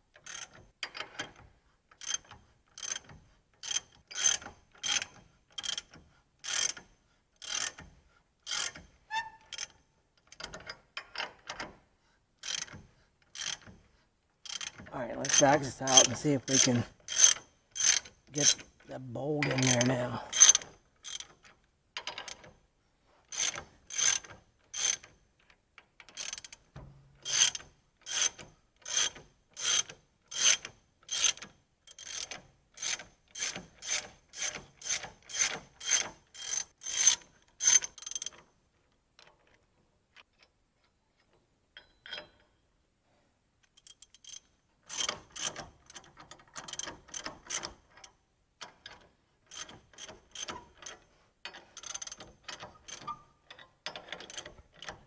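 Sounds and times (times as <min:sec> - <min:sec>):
ratchet wrench clicking: 0:14.5 - 0:18.6.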